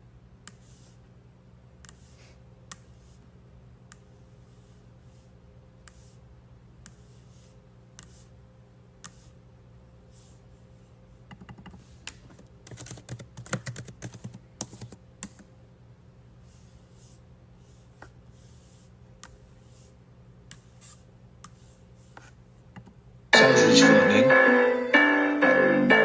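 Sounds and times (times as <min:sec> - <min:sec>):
faint steady hum: 0:00.0 - 0:26.0
computer keyboard typing: 0:12.6 - 0:15.4.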